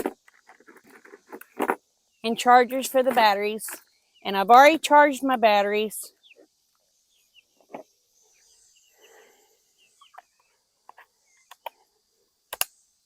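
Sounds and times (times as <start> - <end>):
small chirps: 6.1 - 13.0.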